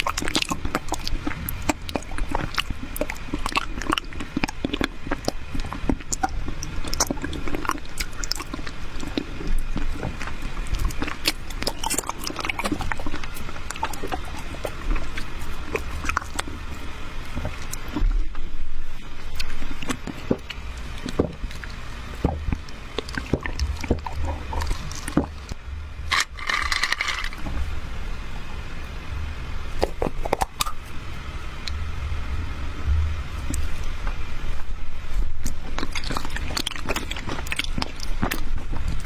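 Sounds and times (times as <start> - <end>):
wet chewing and smacking: 0.0 - 27.7, 29.7 - 31.0, 33.4 - 39.0
low rumble: 30.8 - 36.5.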